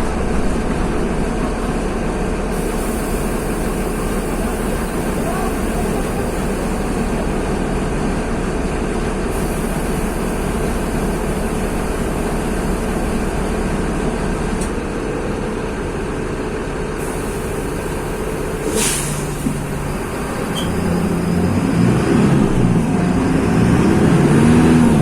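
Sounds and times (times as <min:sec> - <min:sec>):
bus diesel engine running: 0:00.0 - 0:25.0
brief hiss: 0:18.6 - 0:19.7.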